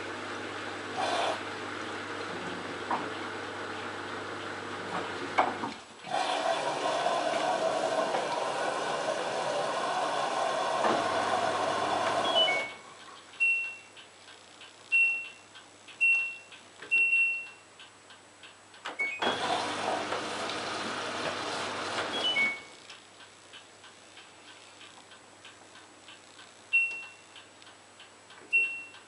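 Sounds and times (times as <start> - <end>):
washing machine running: 0.0 - 13.0, 19.2 - 22.6
control panel beeps: 12.2 - 12.8, 13.4 - 14.0, 14.9 - 15.4, 16.0 - 17.6, 26.7 - 27.4, 28.5 - 29.0.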